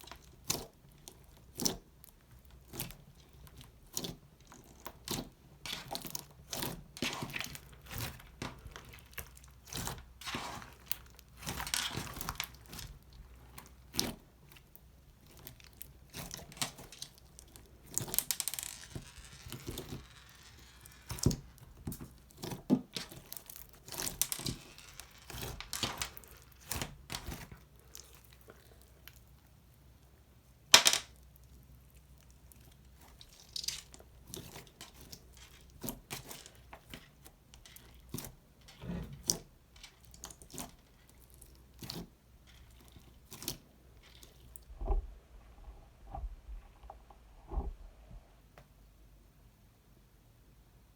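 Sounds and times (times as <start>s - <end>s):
slime stretching and crackling: 2.6s - 29.4s.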